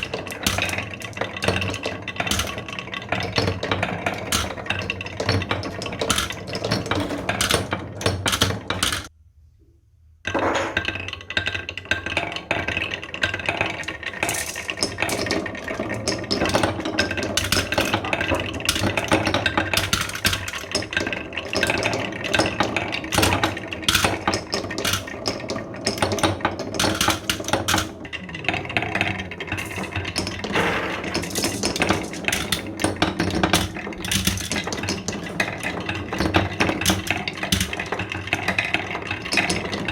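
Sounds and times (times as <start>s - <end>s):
marbles clattering down marble run: 0.0s - 9.1s, 10.3s - 39.9s.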